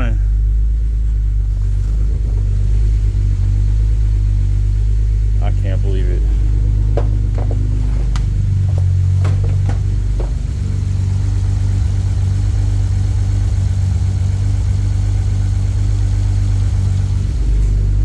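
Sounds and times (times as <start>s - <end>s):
car engine idling: 0.0s - 18.0s
short engine ticks: 6.2s - 17.9s.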